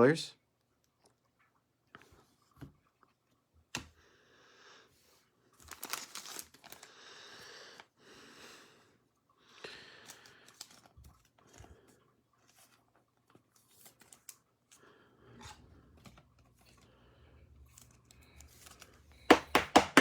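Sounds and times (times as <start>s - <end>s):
plastic sleeves crinkling: 5.5s - 7.0s, 10.1s - 11.6s, 12.4s - 14.8s.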